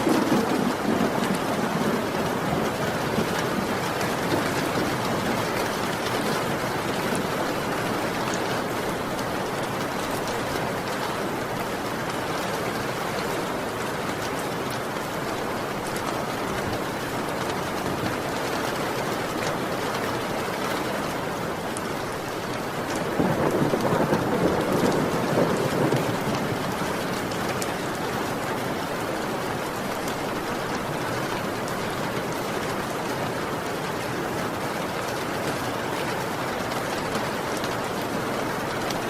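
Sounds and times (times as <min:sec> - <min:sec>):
low thunder rumble: 0:00.0 - 0:05.5, 0:23.0 - 0:27.4
heavy rain falling: 0:00.0 - 0:39.0.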